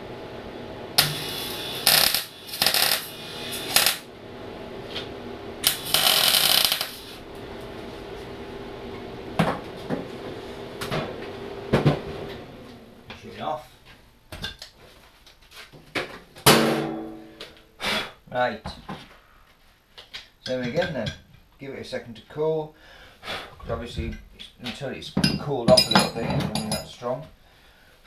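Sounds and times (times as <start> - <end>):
welding machine humming: 0.0 - 11.8
arc welding crackling: 0.9 - 4.2, 4.8 - 8.2.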